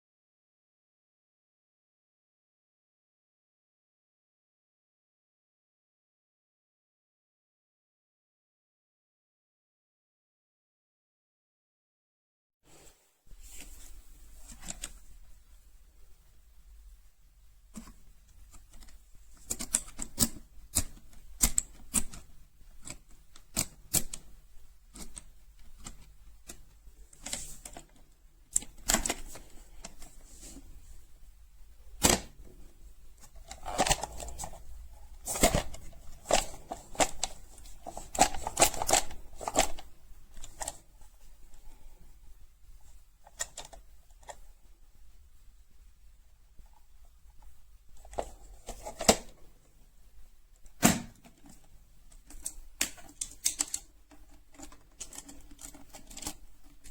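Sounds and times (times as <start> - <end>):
plastic lock box clicks: 32.0 - 32.4, 50.6 - 56.9.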